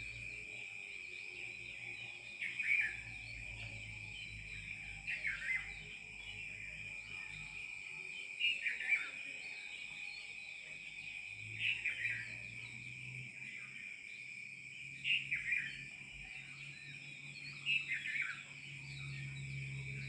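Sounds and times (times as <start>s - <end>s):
high-pitched insect drone: 14.9s - 20.0s.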